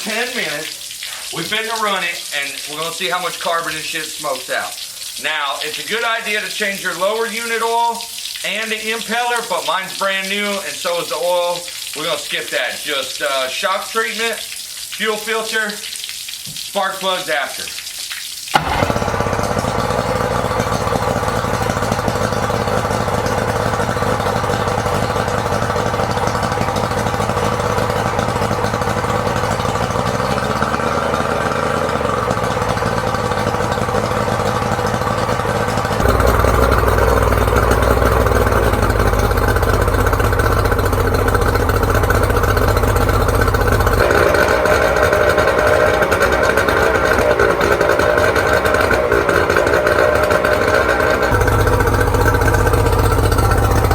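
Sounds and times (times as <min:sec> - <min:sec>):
outboard motor running: 0:18.5 - 0:53.9.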